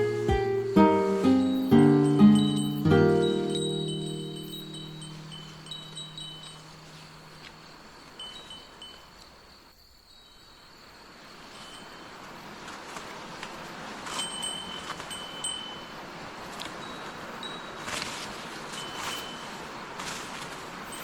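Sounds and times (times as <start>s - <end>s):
bear bell tinkling: 0.0s - 7.4s
low ringing tone: 0.0s - 7.4s
steady outdoor hiss: 0.0s - 21.0s.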